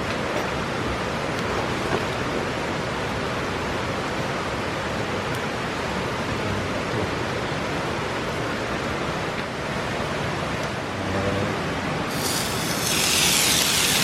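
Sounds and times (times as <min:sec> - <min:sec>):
river water rushing: 0:00.0 - 0:14.0
high hiss: 0:12.1 - 0:14.0.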